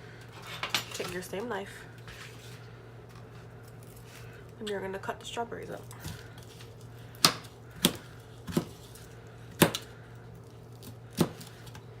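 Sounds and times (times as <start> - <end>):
knife cutting strawberries: 6.0 - 9.9.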